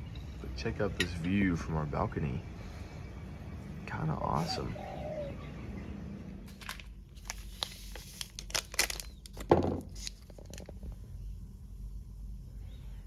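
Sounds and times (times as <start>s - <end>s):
plastic packaging crinkling: 6.5s - 10.9s.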